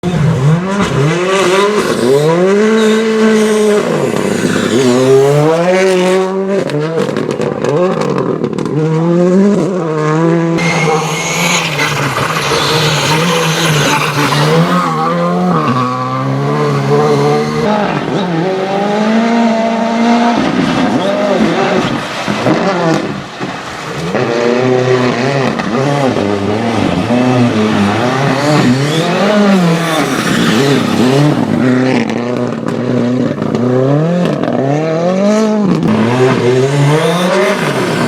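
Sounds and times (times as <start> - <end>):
rally car engine revving: 0.0 - 38.0
exhaust crackles and pops: 6.6 - 8.9, 20.2 - 34.7.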